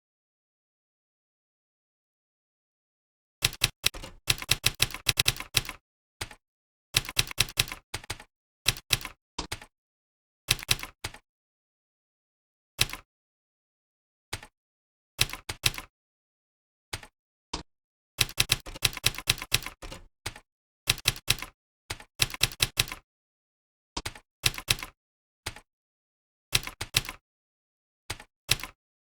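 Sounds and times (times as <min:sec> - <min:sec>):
computer keyboard typing: 0:03.4 - 0:06.4, 0:07.0 - 0:09.7, 0:10.5 - 0:11.2, 0:15.2 - 0:15.9, 0:18.2 - 0:23.0, 0:24.0 - 0:25.7, 0:26.5 - 0:27.2, 0:28.1 - 0:28.8.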